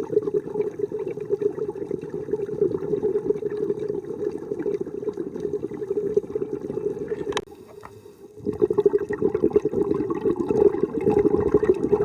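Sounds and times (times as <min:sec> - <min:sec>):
underwater air bubbling: 0:00.0 - 0:12.0.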